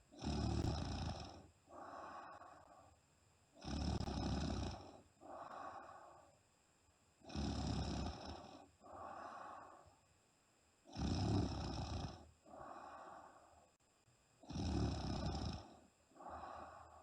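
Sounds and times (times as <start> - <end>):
woman snoring loudly: 0.2 - 2.7, 3.6 - 6.1, 7.2 - 9.8, 10.9 - 13.4, 14.4 - 17.0.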